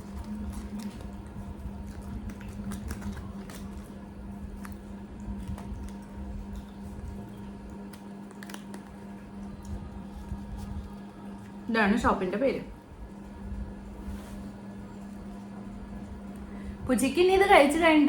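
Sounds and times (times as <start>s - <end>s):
food wrapping crackling: 0.0s - 11.6s
low hum: 0.0s - 18.0s.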